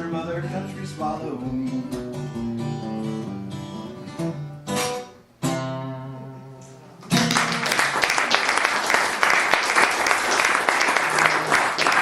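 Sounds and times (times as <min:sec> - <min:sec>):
acoustic guitar playing: 0:00.0 - 0:08.0
applause: 0:07.1 - 0:12.0.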